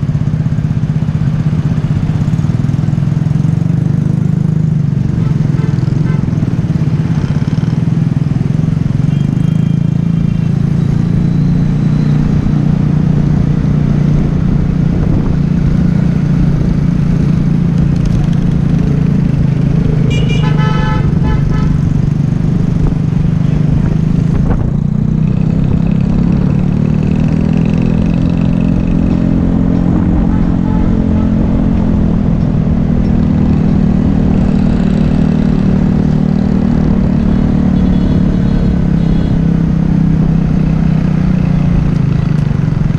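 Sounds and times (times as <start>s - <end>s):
motorbike engine running: 0.0s - 42.9s
traffic horns honking: 5.0s - 6.6s, 9.0s - 10.8s, 19.6s - 22.1s, 29.6s - 32.2s, 36.6s - 39.6s.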